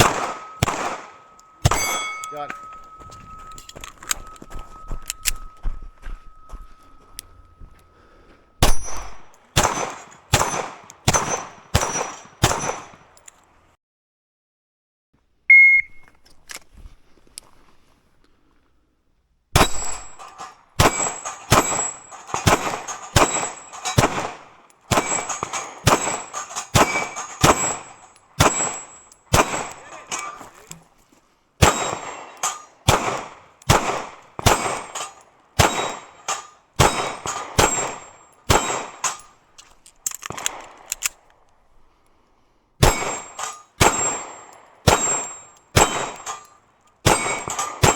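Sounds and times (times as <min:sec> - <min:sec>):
gunshots: 0:00.0 - 0:02.5, 0:08.6 - 0:13.0, 0:19.6 - 0:30.4, 0:31.6 - 0:39.2, 0:42.8 - 0:46.4, 0:47.0 - 0:47.9
steel target ringing: 0:00.0 - 0:09.3
short high beep: 0:15.5 - 0:16.1.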